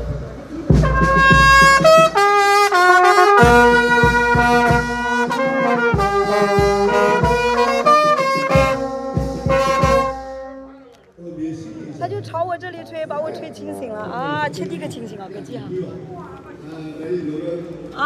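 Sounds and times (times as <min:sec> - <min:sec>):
low drum hits: 0:00.0 - 0:02.2, 0:03.4 - 0:05.4
brass instrument melody: 0:00.0 - 0:10.9.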